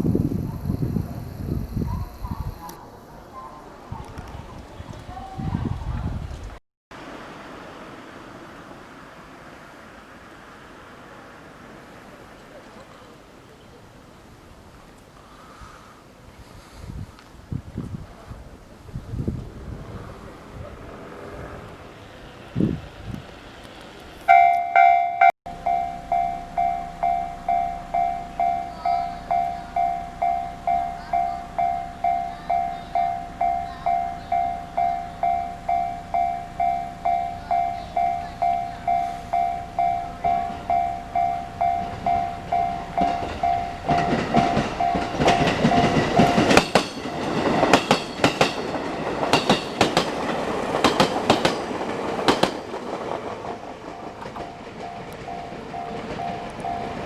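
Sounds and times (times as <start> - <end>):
train wheels clattering on rails: 19.7 - 57.0
level crossing bell alarm: 24.3 - 51.8, 53.8 - 57.0.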